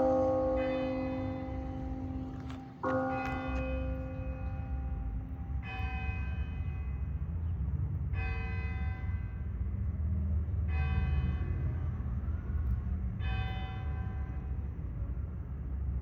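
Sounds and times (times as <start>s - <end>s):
steady low rumble: 0.0s - 6.4s
church bell tolling: 0.0s - 7.2s.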